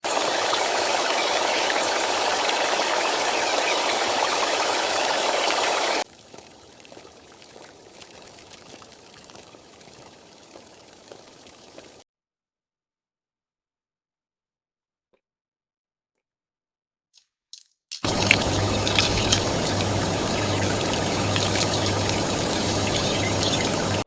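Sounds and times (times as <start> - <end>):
heavy rain hissing: 0.0 - 12.0, 18.0 - 24.0
small scattered ticks: 6.1 - 12.0.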